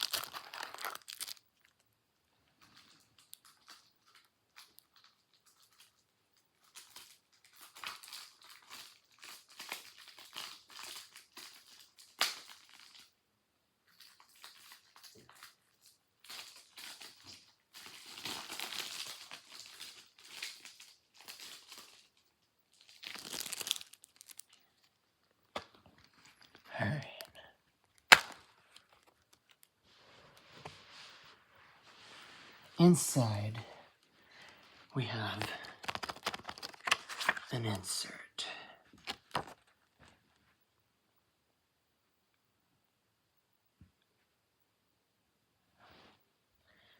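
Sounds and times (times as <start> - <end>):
plastic wrap snapping: 0.0 - 1.8, 6.6 - 13.1, 16.2 - 26.6, 27.9 - 29.7, 35.4 - 37.5
plastic wrap crinkling and tearing: 0.0 - 1.9, 2.6 - 13.2, 13.8 - 30.6, 31.9 - 37.5, 38.9 - 39.9.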